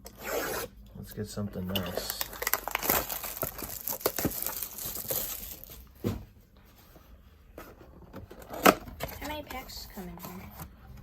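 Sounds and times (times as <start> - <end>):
plastic wrapping tearing and crinkling: 2.0 - 5.9.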